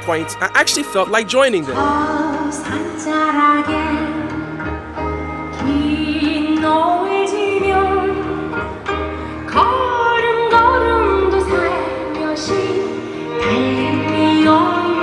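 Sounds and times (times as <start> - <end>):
low musical accompaniment: 0.0 - 4.4.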